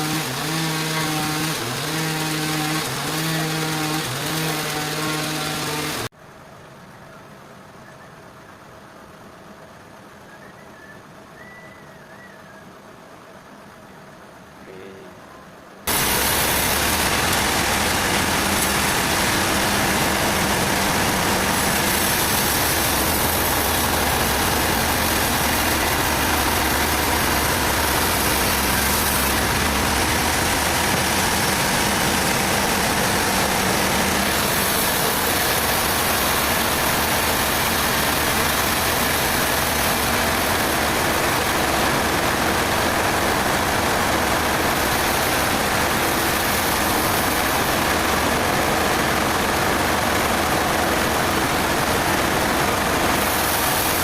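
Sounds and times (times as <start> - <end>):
sawmill machinery engine running: 0.0 - 6.5, 15.9 - 54.0.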